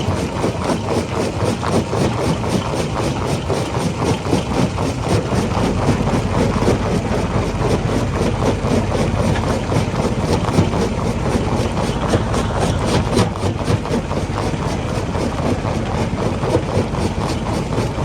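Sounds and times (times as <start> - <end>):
stone crusher machine running: 0.0 - 18.0
deep hum: 4.4 - 18.0.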